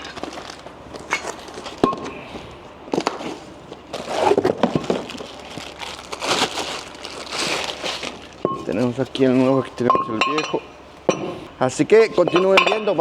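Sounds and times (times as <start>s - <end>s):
packaging rustling and crinkling: 0.0s - 9.9s.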